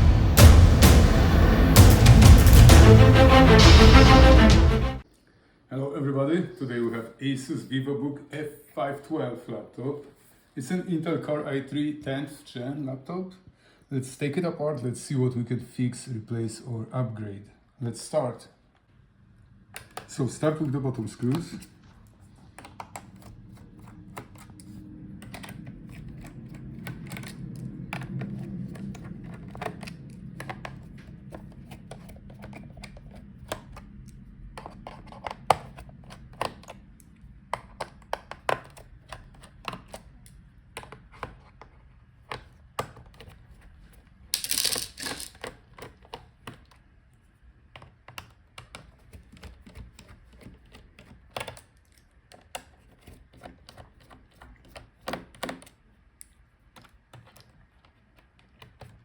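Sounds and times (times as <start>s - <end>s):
low hum: 0.0s - 5.0s
rushing noise: 0.0s - 5.0s.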